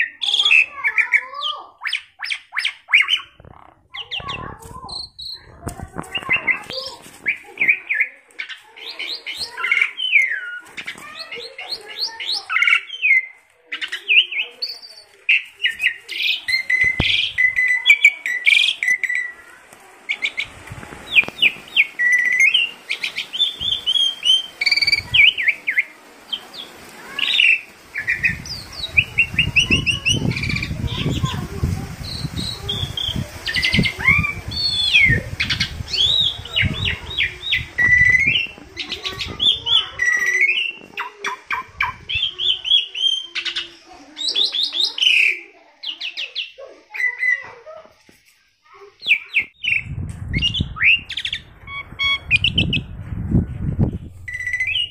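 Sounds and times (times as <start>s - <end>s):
starling singing and chattering: 0.0s - 54.9s
low rumble: 49.8s - 54.9s.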